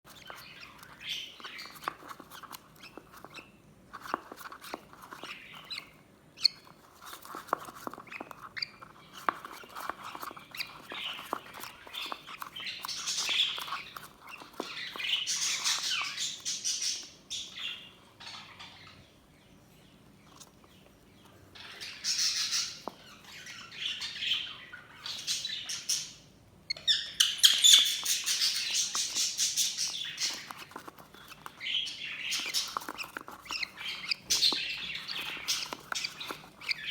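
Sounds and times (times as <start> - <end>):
budgerigars chirping and squawking: 0.1 - 36.9.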